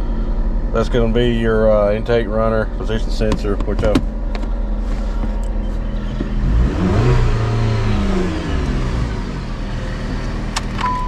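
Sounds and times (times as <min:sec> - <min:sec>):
car engine idling and revving: 0:00.0 - 0:11.0.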